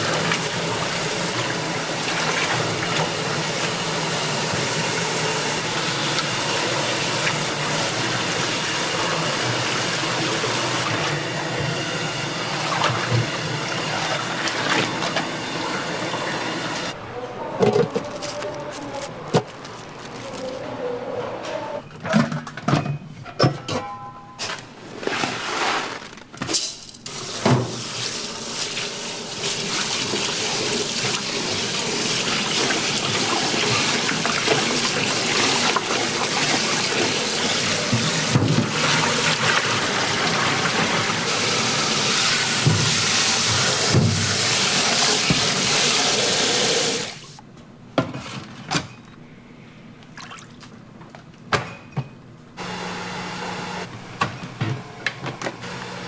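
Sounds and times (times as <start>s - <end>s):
water running from a tap: 0.0s - 11.6s, 27.1s - 47.4s
kitchen utensils clattering: 21.5s - 27.7s.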